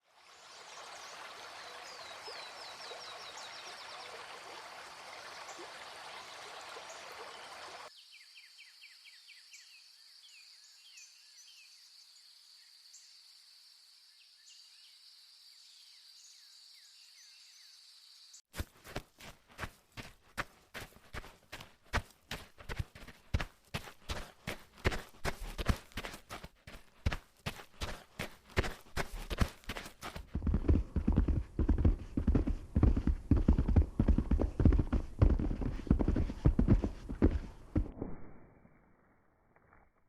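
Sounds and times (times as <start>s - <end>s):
running water: 0.0s - 7.9s.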